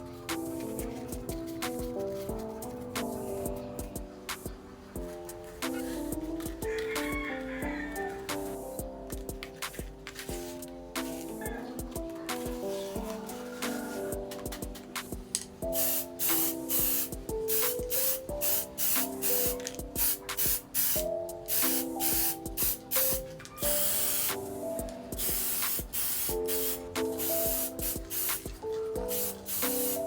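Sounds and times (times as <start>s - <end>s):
light background music: 0.0s - 30.0s
spray paint hissing: 10.6s - 11.4s, 14.9s - 30.0s.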